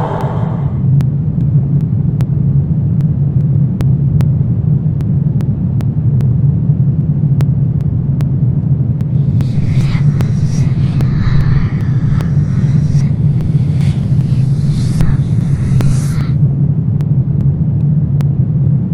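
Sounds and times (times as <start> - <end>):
low droning rumble: 0.0 - 1.4, 9.0 - 16.6
high hissing layer: 9.2 - 16.5.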